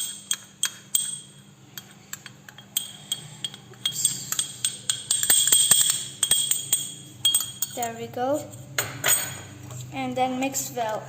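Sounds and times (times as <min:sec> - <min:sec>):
spoon clinking in mug: 0:00.0 - 0:07.9.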